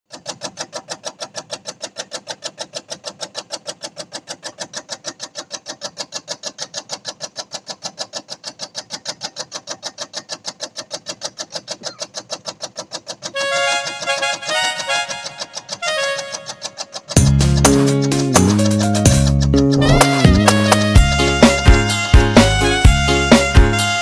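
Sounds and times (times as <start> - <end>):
machine blade clacking: 0.1 - 24.0
motor hum: 13.1 - 24.0.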